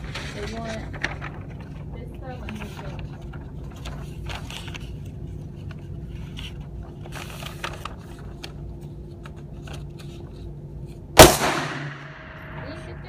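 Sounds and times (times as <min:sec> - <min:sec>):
steady low hum: 0:00.0 - 0:13.0
pistol shot: 0:11.2 - 0:12.6.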